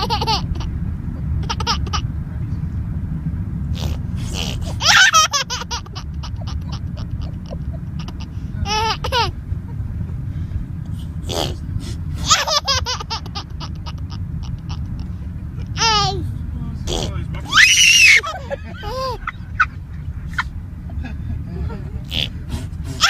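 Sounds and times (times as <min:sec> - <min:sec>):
baby laughing: 0:00.0 - 0:02.1, 0:03.8 - 0:09.4, 0:11.2 - 0:16.2, 0:16.9 - 0:23.0
low rumble: 0:00.0 - 0:23.0
baby squealing: 0:03.8 - 0:09.4, 0:11.3 - 0:11.6, 0:12.2 - 0:15.0, 0:15.7 - 0:16.2, 0:16.9 - 0:19.7.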